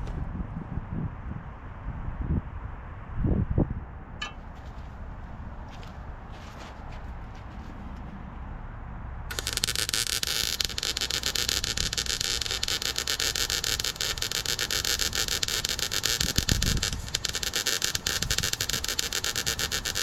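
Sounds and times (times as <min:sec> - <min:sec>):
electric arc welding crackle: 0:09.3 - 0:20.0.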